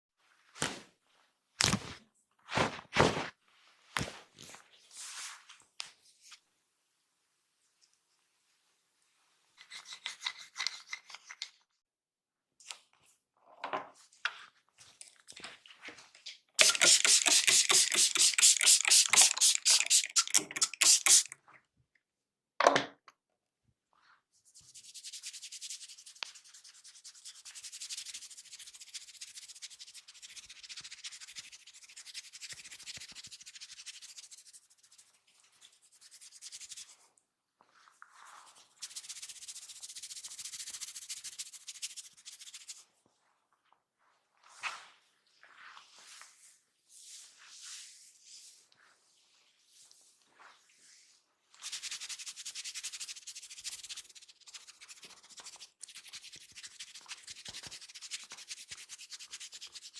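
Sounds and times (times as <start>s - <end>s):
rubbing and scratching of hair: 4.0s - 6.4s, 16.6s - 21.4s, 24.3s - 59.9s.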